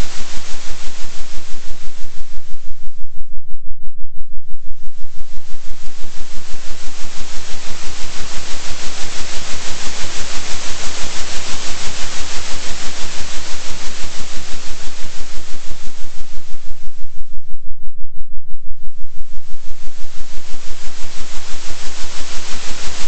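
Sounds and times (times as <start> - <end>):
pulsing synthetic hiss: 0.0 - 2.9, 4.8 - 17.2, 19.1 - 23.0
steady low hum: 0.0 - 23.0.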